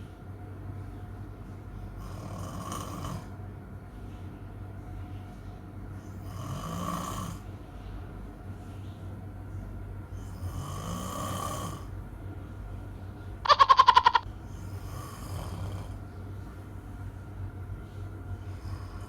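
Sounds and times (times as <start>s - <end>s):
man snoring: 2.0s - 3.3s, 6.2s - 7.4s, 10.3s - 11.9s, 14.8s - 16.0s.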